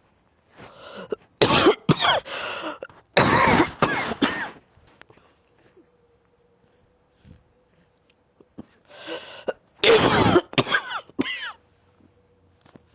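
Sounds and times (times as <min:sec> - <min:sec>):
person coughing: 0:01.0 - 0:04.6, 0:08.6 - 0:11.6.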